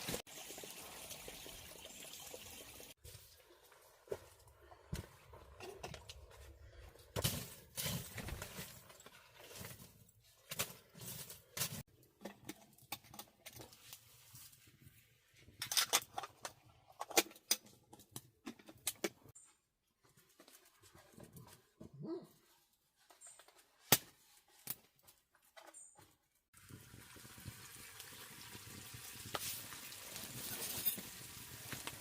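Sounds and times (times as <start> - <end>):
dog sounds: 22.0 - 22.5.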